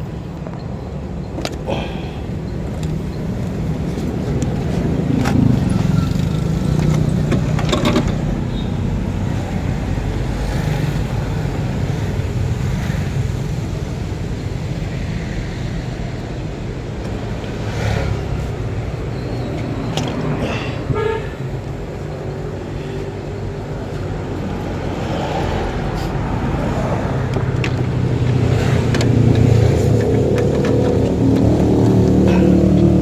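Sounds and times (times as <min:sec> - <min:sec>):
car engine running: 0:02.6 - 0:08.7, 0:27.3 - 0:33.0.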